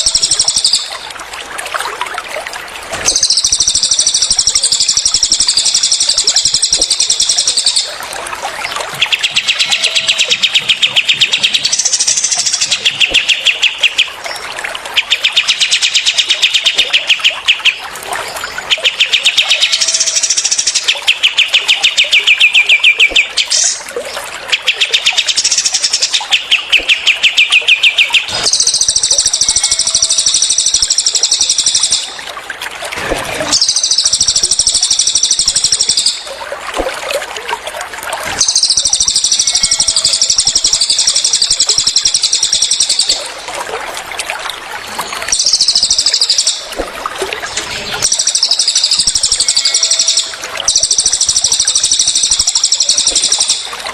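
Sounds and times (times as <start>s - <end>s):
water trickling: 0.0s - 53.9s
songbirds chattering: 8.6s - 14.4s.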